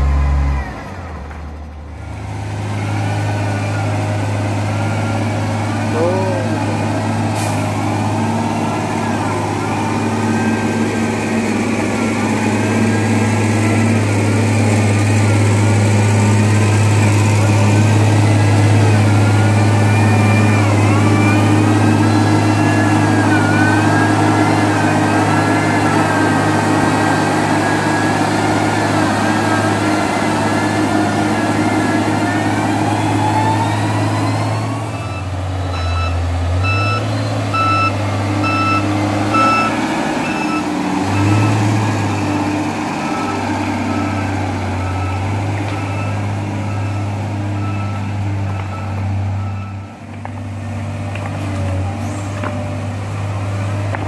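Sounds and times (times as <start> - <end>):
diesel construction machine running: 0.0 - 54.0
reversing alarm beeps: 18.2 - 28.3, 31.4 - 41.8, 43.0 - 49.9.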